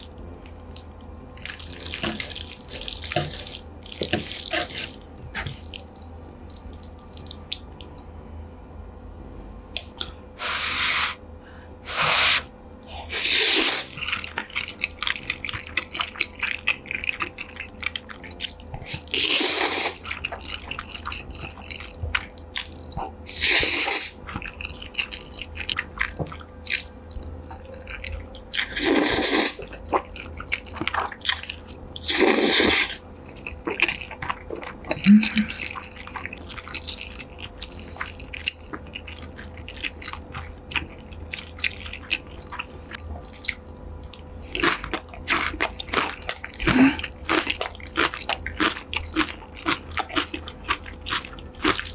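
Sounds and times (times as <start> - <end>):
wet chewing: 0.0 - 8.0, 12.8 - 51.9
biting food: 29.6 - 51.9.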